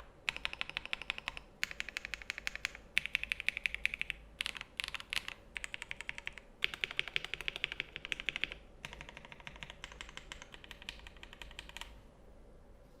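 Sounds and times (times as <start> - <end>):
typing on mechanical keyboard: 0.0 - 12.0.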